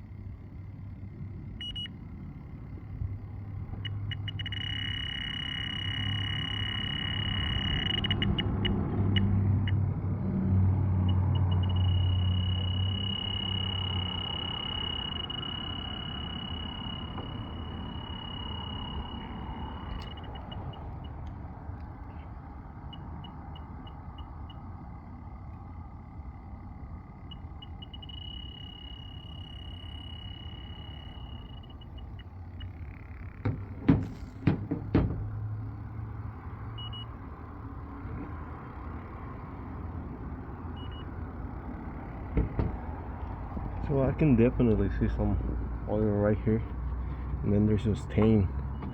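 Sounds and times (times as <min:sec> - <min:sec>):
low hum: 0:00.0 - 0:34.4
high-pitched alarm tone: 0:01.6 - 0:02.0, 0:03.7 - 0:09.9, 0:10.9 - 0:21.2, 0:27.1 - 0:33.4
short beeps: 0:01.6 - 0:02.0, 0:03.8 - 0:09.8, 0:11.0 - 0:21.2, 0:27.3 - 0:33.2, 0:36.8 - 0:37.1, 0:40.8 - 0:41.2.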